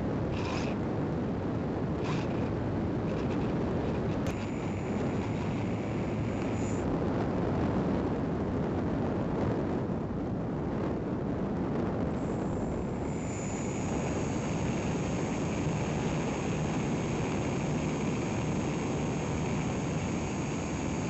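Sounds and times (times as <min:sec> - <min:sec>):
faint high whine: 0:00.0 - 0:08.0, 0:12.0 - 0:21.0
rushing air noise: 0:01.9 - 0:07.4, 0:12.1 - 0:21.0.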